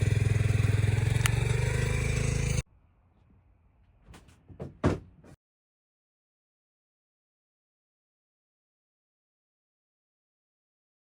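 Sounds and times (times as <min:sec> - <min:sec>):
small engine running: 0:00.0 - 0:02.6
loud thump: 0:04.5 - 0:05.4.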